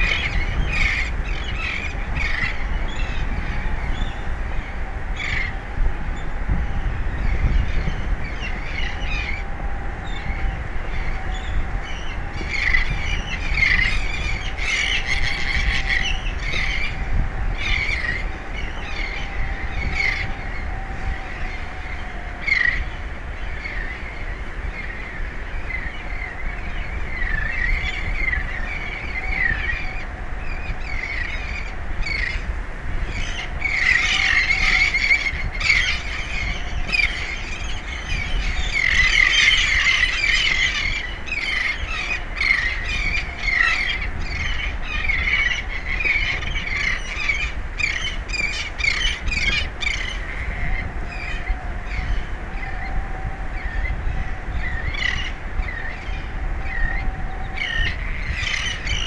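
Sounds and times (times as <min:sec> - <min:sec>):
wind and sea rumble: 0:00.0 - 0:59.0
birds squawking: 0:33.1 - 0:52.2.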